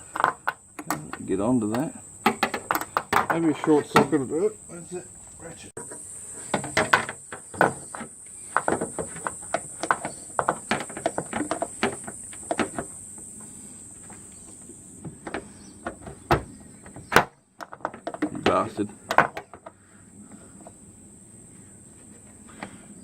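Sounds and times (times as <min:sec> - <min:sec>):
crickets chirping: 0:00.0 - 0:23.0.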